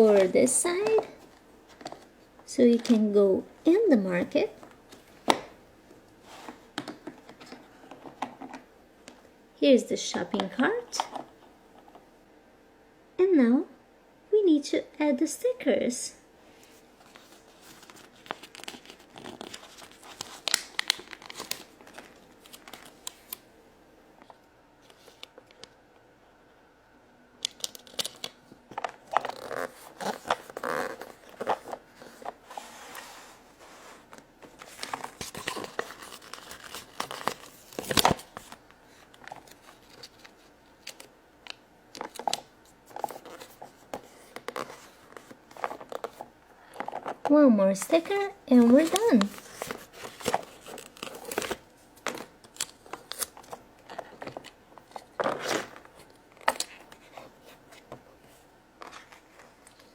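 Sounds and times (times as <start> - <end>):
stickers peeling and rustling: 17.0 - 23.4, 27.4 - 33.1, 34.0 - 47.3, 47.9 - 59.9.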